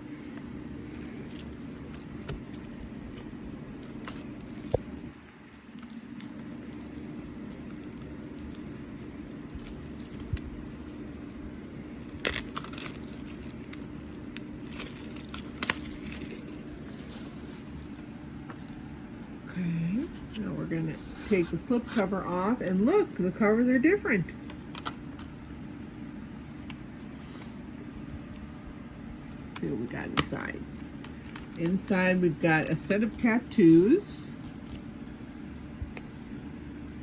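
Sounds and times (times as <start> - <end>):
steady background hum: 0.0 - 37.0
plastic shrink wrap crinkling: 0.4 - 18.8.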